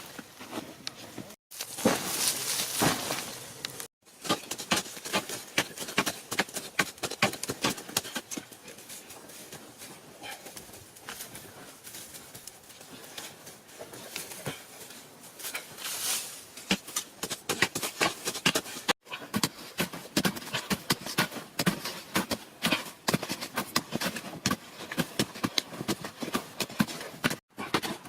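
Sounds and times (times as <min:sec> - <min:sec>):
rapid irregular knocks and taps: 0:04.2 - 0:08.6, 0:16.7 - 0:28.0.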